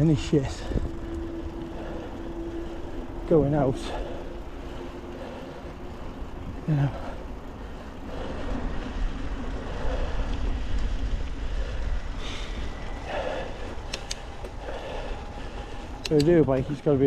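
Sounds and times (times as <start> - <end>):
bike tyres rolling over trail: 0.0 - 17.0
wind rumble on microphone: 0.0 - 17.0
sharp clicks: 13.8 - 14.6, 16.0 - 16.4.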